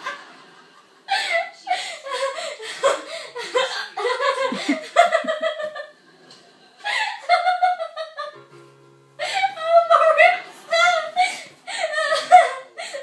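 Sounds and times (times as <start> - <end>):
person laughing high-pitched: 9.2 - 13.0.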